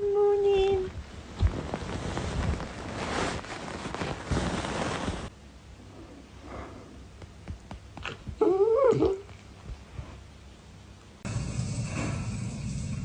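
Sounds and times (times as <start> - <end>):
rustling: 0.5 - 5.3.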